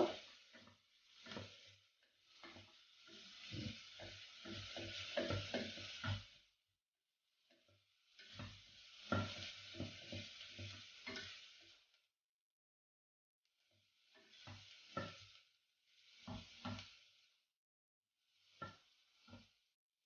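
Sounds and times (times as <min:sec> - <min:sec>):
spatula knocking and scraping pan: 0:00.0 - 0:06.5, 0:07.4 - 0:11.9, 0:13.9 - 0:15.4, 0:16.0 - 0:17.3, 0:18.4 - 0:19.6
onions sizzling in a pan: 0:00.0 - 0:06.7, 0:07.3 - 0:12.2, 0:13.5 - 0:17.6, 0:18.2 - 0:19.8.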